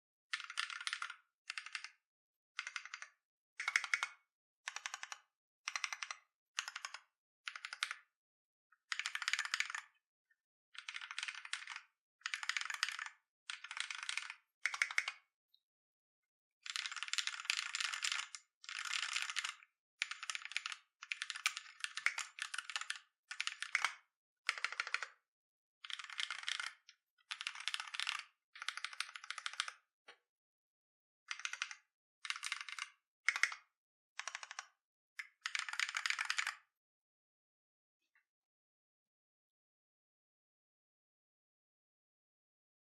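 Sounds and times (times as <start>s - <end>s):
mechanical keyboard typing: 0.3s - 2.0s, 2.6s - 8.1s, 8.9s - 9.9s, 10.8s - 15.2s, 16.7s - 25.2s, 25.9s - 29.8s, 31.3s - 36.6s.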